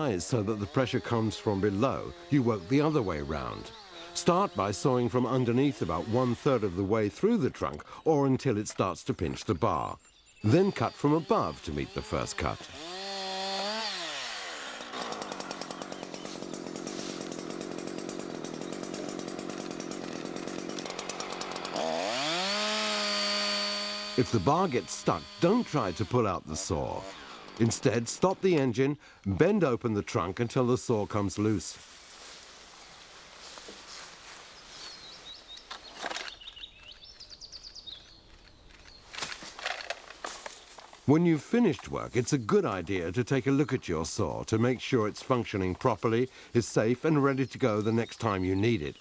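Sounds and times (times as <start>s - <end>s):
chainsaw cutting a log: 0.0s - 7.4s, 10.4s - 28.8s
rustling: 31.7s - 37.2s, 38.0s - 41.1s
outdoor background noise: 31.8s - 46.0s
small bird chirping: 34.6s - 39.1s.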